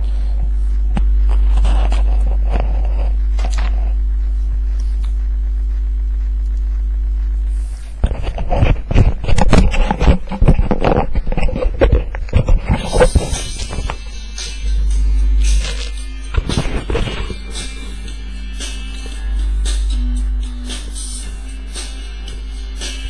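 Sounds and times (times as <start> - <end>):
low electrical hum: 0.0 - 23.0
irregular scrapes and knocks: 0.4 - 14.2.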